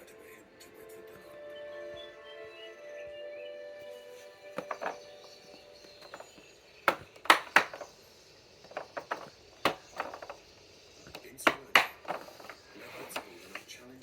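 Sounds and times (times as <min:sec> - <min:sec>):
hard objects clicking and knocking: 0:04.6 - 0:08.0, 0:08.6 - 0:13.8.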